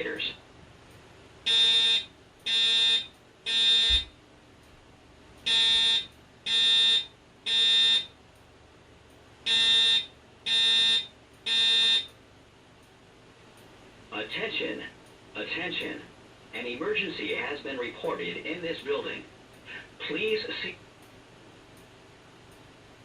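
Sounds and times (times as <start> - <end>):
spoken messages over speaker: 0.0 - 0.4, 14.1 - 20.8
fire alarm evacuation beeps: 1.4 - 4.1, 5.4 - 8.2, 9.4 - 12.2.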